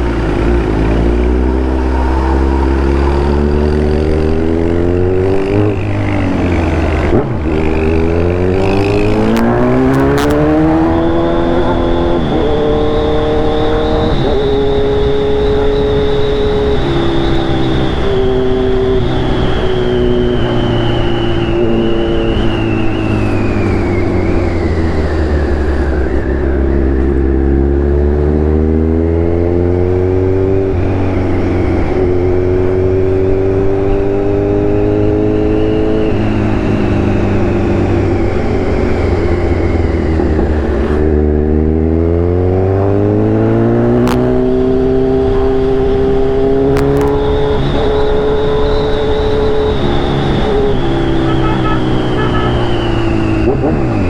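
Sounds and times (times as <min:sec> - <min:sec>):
motorcycle engine running: 0:00.0 - 0:19.5.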